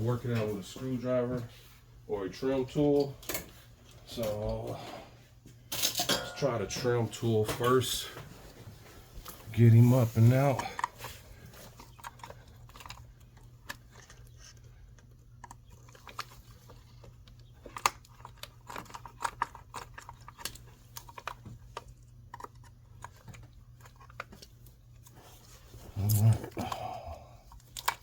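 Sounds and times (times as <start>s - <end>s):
steady low hum: 0.0s - 28.0s
plastic clicks and scrapes: 10.3s - 25.6s.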